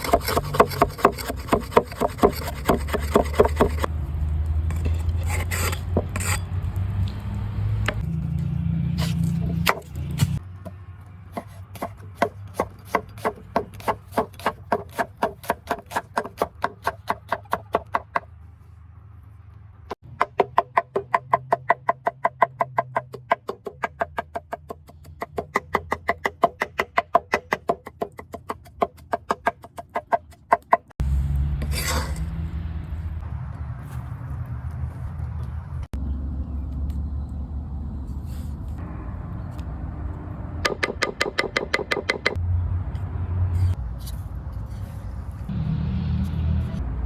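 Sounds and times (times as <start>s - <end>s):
knife chopping on wooden board: 11.4s - 18.3s, 20.2s - 30.9s.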